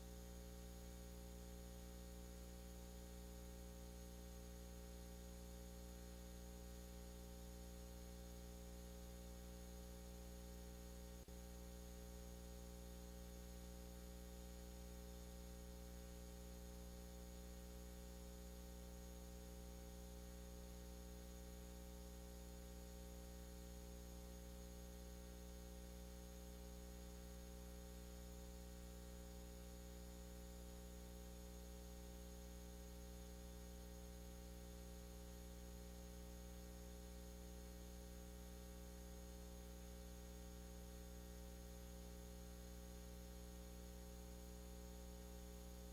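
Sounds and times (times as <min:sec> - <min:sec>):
faint electrical hum: 0:00.0 - 0:45.9.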